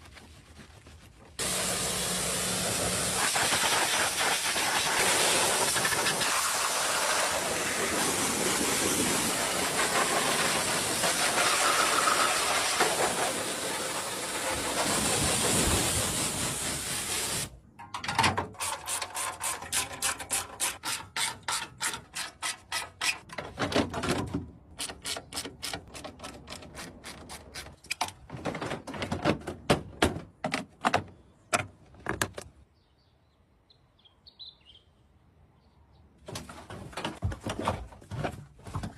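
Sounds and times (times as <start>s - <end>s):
spray jet hissing: 1.4s - 17.5s.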